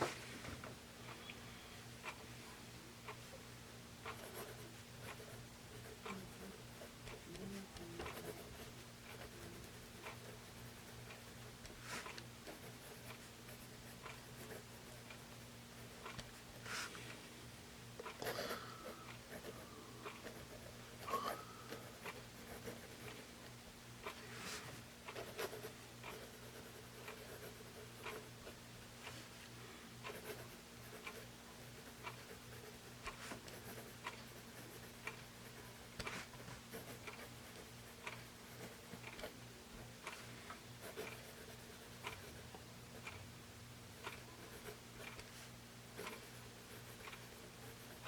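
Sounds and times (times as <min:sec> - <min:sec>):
pencil scratching on paper: 0:04.0 - 0:17.0, 0:19.3 - 0:23.3, 0:24.0 - 0:28.3, 0:30.0 - 0:39.3, 0:40.8 - 0:43.1, 0:44.0 - 0:48.0
pencil lead ticking on paper: 0:04.0 - 0:17.2, 0:18.0 - 0:29.2, 0:30.0 - 0:43.2, 0:44.0 - 0:48.0.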